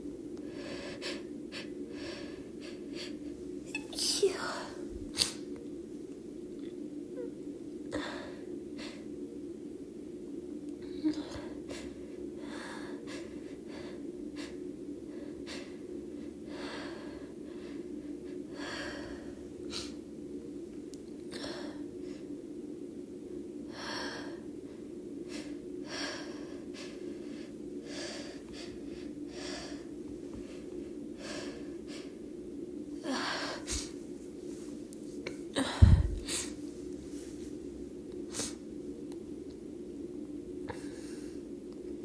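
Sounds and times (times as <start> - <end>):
steady low hum: 0.0 - 42.0
woman sniffing and gasping: 33.1 - 34.0, 35.5 - 36.7.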